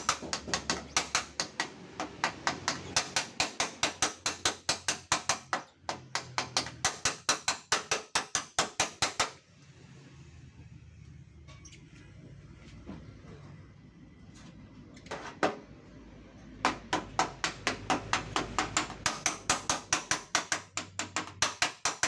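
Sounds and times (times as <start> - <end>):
hammer tapping on metal panel: 0.0 - 9.4, 16.6 - 22.0.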